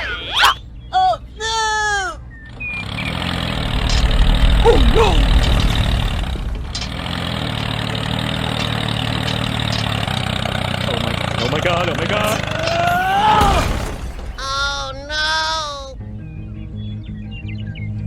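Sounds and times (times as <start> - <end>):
small tractor engine running: 2.4 - 13.9.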